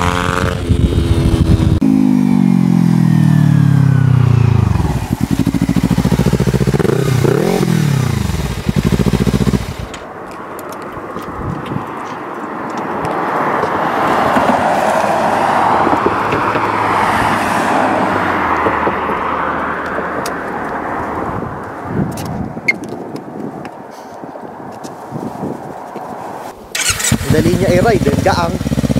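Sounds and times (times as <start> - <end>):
motorcycle engine revving: 0.0 - 10.0, 26.8 - 28.9.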